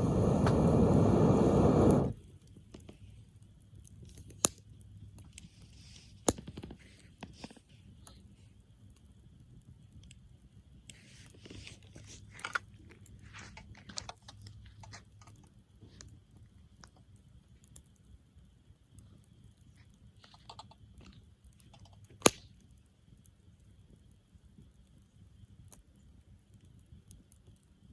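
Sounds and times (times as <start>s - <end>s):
low steady rumble: 0.0s - 2.2s
campfire crackling and popping: 0.0s - 2.7s, 8.9s - 27.9s.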